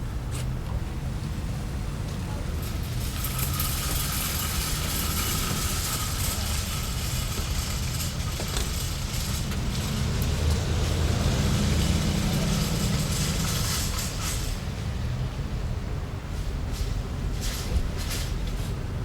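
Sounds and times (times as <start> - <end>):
car engines rumbling: 0.0 - 19.0
shopping carts rattling: 2.4 - 14.7, 16.7 - 18.7.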